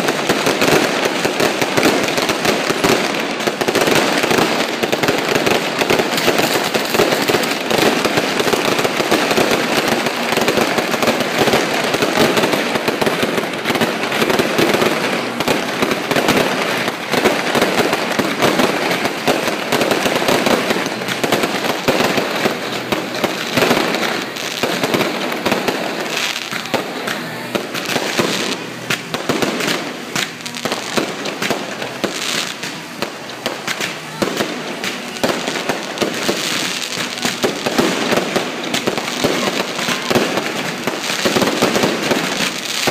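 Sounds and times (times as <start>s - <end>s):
fireworks and firecrackers crackling: 0.0s - 42.9s.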